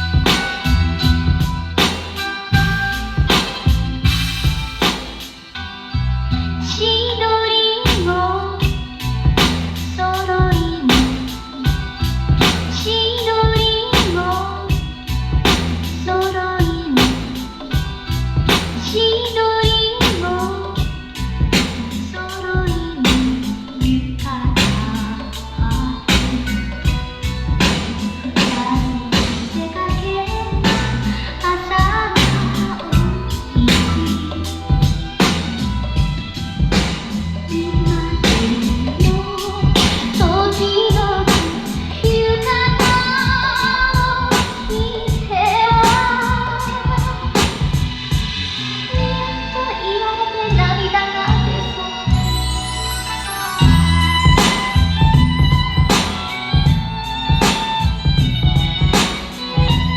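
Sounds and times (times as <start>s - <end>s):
steady beat: 0.0s - 6.4s, 7.9s - 48.7s, 53.5s - 59.9s
guitar: 0.0s - 59.9s
song with singing drums and bass: 0.0s - 59.9s.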